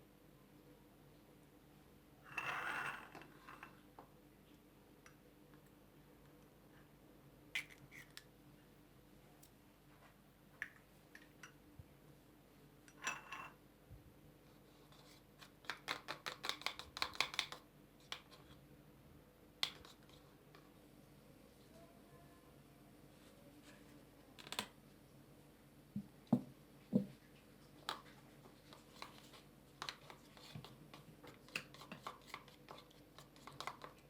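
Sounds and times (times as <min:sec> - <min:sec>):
kitchen utensils clicking and tapping: 0:15.6 - 0:18.3, 0:29.8 - 0:34.0.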